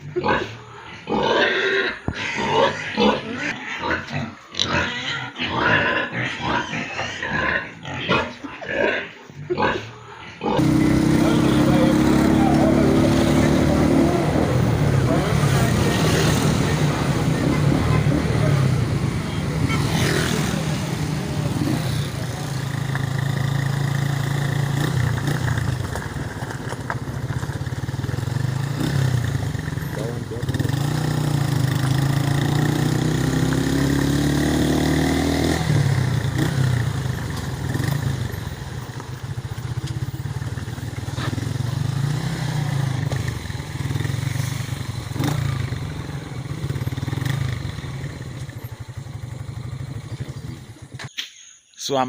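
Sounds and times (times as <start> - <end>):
pigs grunting and squealing: 0.0 - 22.4
vehicle engine running: 9.2 - 51.1.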